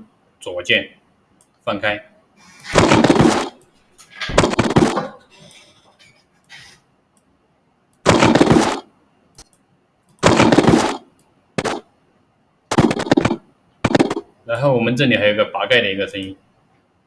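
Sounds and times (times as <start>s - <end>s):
short loud noisy bursts: 10.2s - 11.0s.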